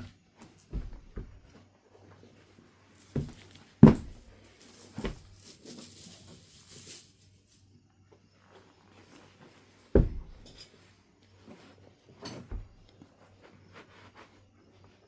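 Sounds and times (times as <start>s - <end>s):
tool knocking on stone: 3.2s - 4.3s.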